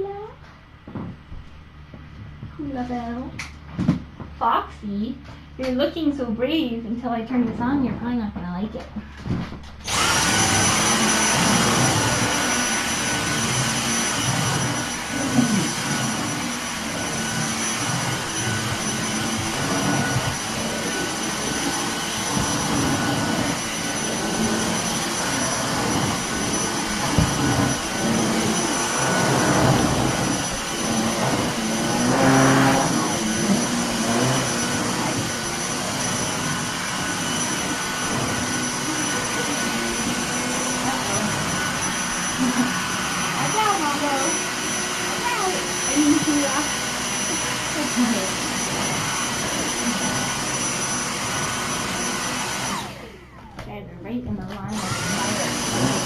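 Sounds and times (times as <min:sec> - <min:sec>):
vacuum cleaner running: 0:09.0 - 0:56.0.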